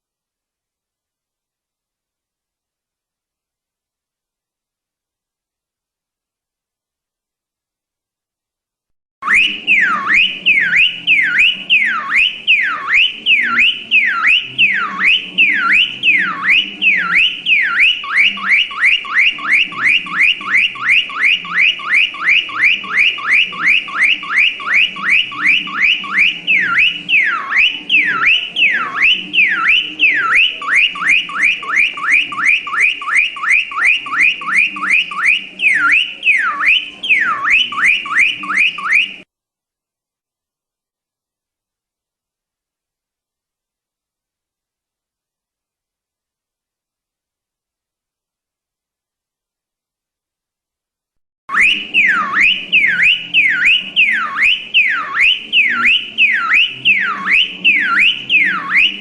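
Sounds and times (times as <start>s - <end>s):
car alarm siren: 9.2s - 39.3s, 51.5s - 59.0s.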